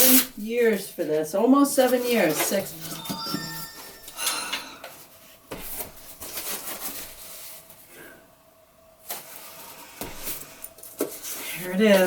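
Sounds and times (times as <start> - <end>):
packaging rustling and scraping: 4.9 - 7.8, 9.0 - 12.0.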